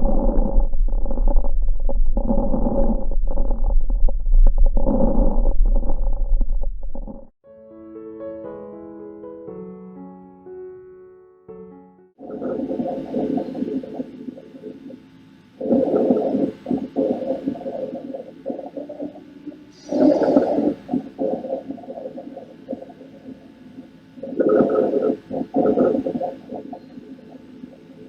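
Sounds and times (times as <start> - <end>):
low humming tone: 0.0 - 7.4
breath sounds through stethoscope: 12.3 - 15.0, 15.6 - 28.0.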